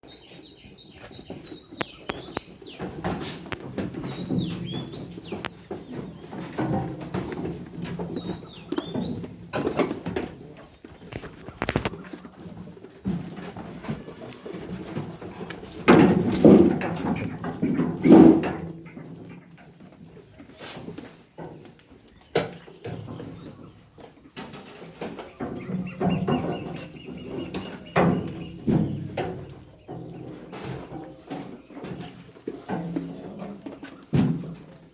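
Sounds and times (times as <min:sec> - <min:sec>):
low farmyard rumble: 0:00.0 - 0:34.9
animal and bird calls: 0:00.1 - 0:06.8, 0:07.8 - 0:09.3, 0:13.7 - 0:19.9, 0:22.0 - 0:34.9.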